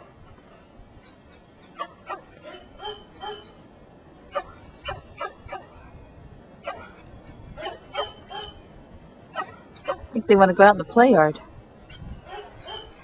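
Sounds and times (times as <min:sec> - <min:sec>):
dogs barking and yipping: 0:00.3 - 0:03.7, 0:04.3 - 0:05.9, 0:06.6 - 0:08.7, 0:09.3 - 0:10.7, 0:11.4 - 0:13.0.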